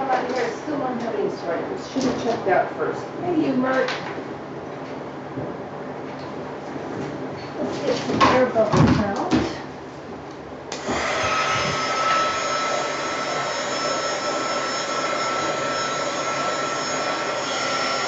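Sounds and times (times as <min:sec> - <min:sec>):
hair dryer blowing: 0:10.7 - 0:15.2.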